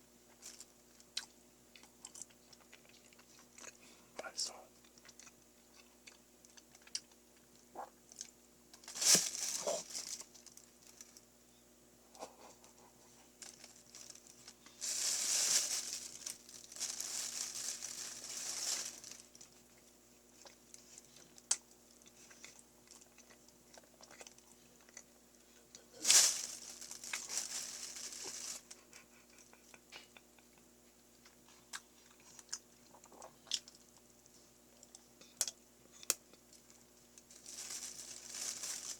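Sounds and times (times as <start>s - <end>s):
soft chewing: 0.3s - 8.4s, 19.3s - 26.0s, 28.6s - 37.3s
wrapper crinkling and rustling: 8.1s - 11.2s, 13.4s - 19.8s, 25.9s - 28.8s, 36.5s - 38.9s.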